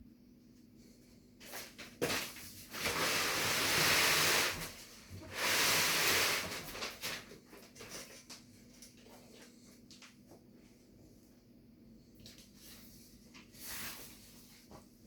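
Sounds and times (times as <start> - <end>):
washing machine scraping: 2.7 - 7.0.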